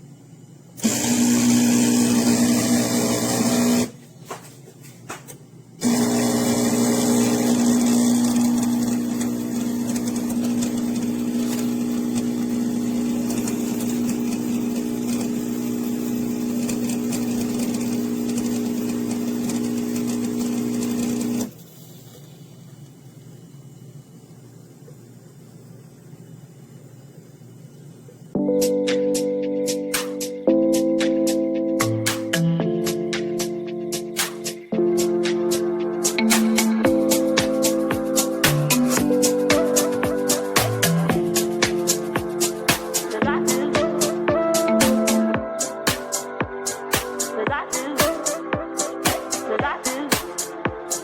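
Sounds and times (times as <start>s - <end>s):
espresso machine pump buzzing: 0.8s - 3.9s, 5.8s - 22.5s.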